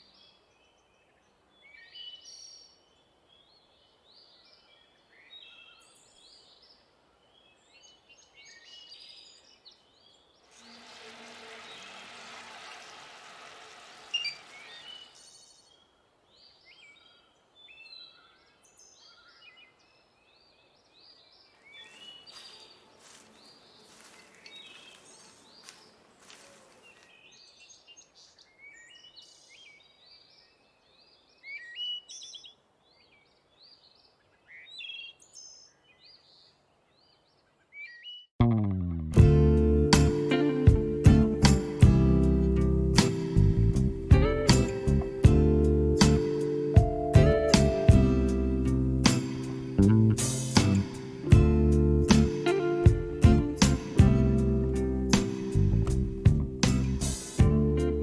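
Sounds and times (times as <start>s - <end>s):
small birds chirping: 12.8s - 38.3s.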